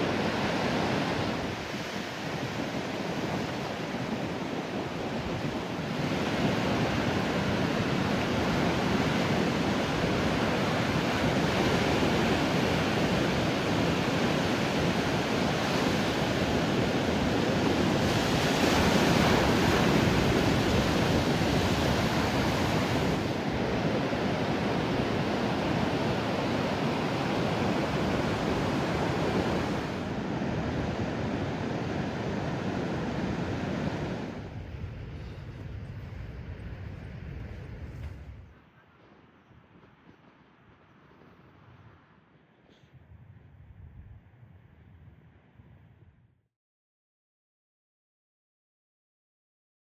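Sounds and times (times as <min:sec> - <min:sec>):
ocean surf breaking on beach: 0:00.0 - 0:37.2
wind on microphone: 0:00.0 - 0:46.4.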